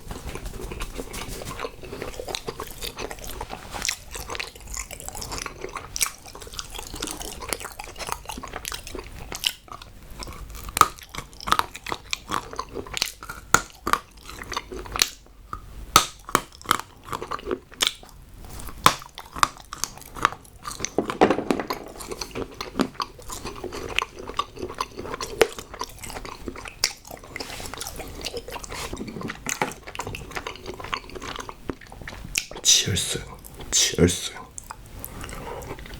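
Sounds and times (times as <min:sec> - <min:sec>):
chocolate crunching and snapping: 0:00.1 - 0:32.6.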